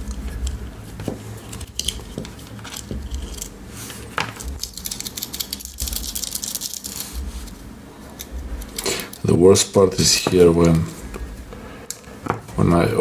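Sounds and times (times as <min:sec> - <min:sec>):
cord rustling: 0:00.0 - 0:09.3.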